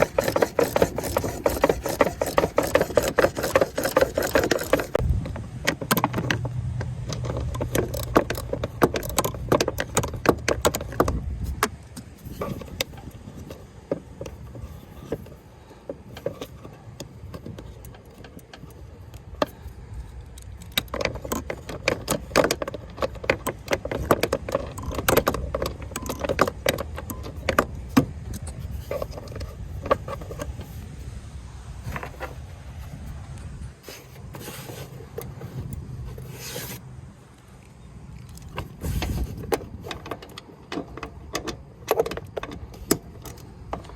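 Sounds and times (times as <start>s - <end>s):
low steady hum: 0.0s - 43.9s
metal tools clinking and rattling: 5.6s - 30.8s.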